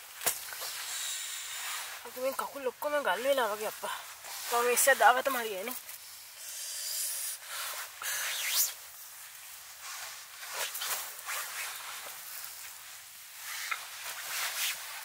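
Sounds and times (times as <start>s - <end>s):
soft rustling and swishing: 0.0s - 6.4s, 7.4s - 15.0s.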